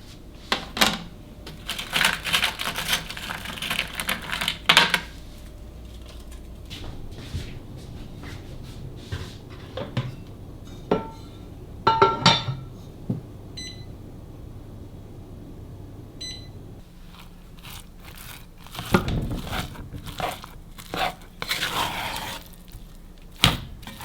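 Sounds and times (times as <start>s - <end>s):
rustling and crinkling: 0.0s - 10.3s, 16.8s - 24.0s
dishes and utensils clinking: 9.4s - 12.8s
electronic appliance beeps: 13.5s - 14.1s, 16.1s - 16.8s.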